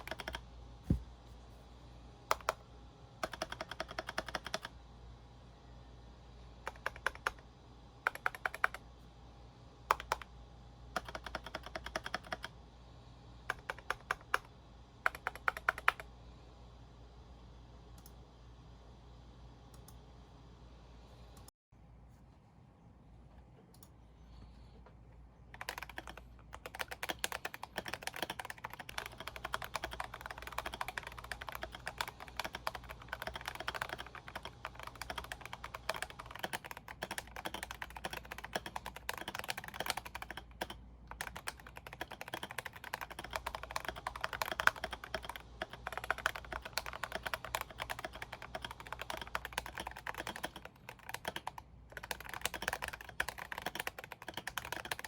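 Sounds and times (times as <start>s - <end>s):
typing on mechanical keyboard: 0.0s - 0.4s, 2.3s - 2.6s, 3.2s - 4.7s, 6.6s - 7.4s, 8.0s - 8.8s, 9.9s - 10.3s, 11.0s - 12.5s, 13.5s - 16.1s, 25.5s - 55.0s.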